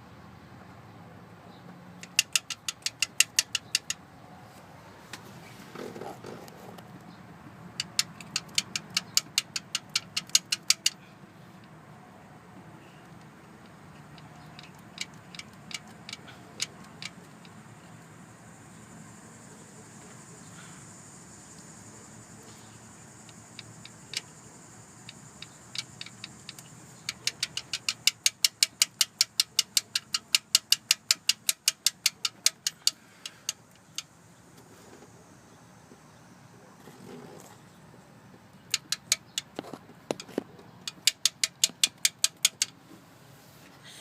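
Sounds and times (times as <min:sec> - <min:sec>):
sharp ticking clicks: 0:02.0 - 0:04.0, 0:07.7 - 0:11.0, 0:13.2 - 0:18.0, 0:23.2 - 0:34.2, 0:38.7 - 0:39.6, 0:40.2 - 0:42.8.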